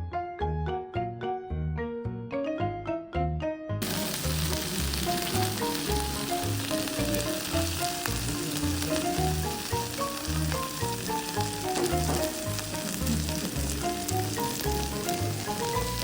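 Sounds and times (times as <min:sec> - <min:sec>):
background music: 0:00.0 - 0:16.0
sauce sizzling on hot plate: 0:03.8 - 0:16.0.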